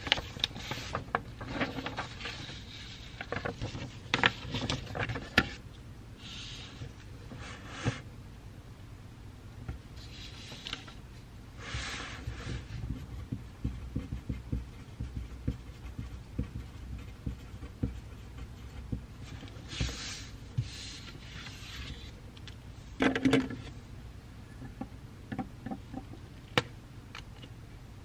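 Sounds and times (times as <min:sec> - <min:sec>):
pencil writing on paper: 0:11.6 - 0:22.1.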